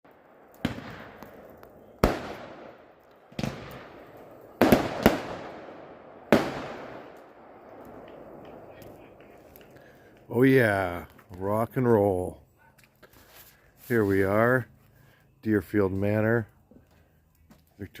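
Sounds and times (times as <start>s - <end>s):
fireworks bangs with echo: 0.1s - 9.8s.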